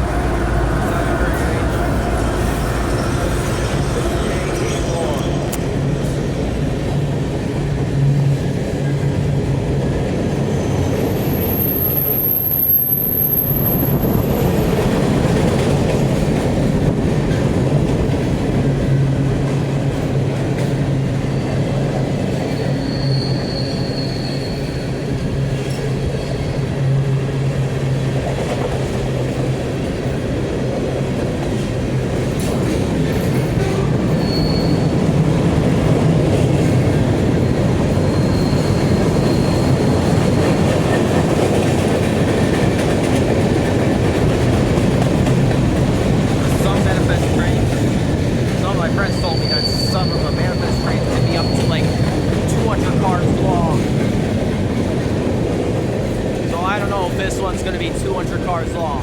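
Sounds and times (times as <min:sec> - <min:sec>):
freight train rumbling past: 0:00.0 - 0:59.0
high-pitched wheel squeals: 0:22.5 - 0:25.1, 0:33.8 - 0:35.0, 0:37.9 - 0:40.2, 0:48.8 - 0:52.5.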